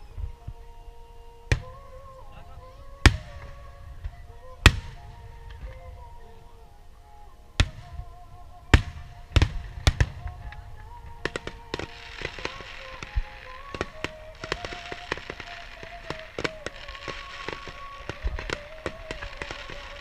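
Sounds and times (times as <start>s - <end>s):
background music: 0.0s - 20.0s
firework crackling: 0.0s - 20.0s
firework shells bursting: 8.7s - 20.0s.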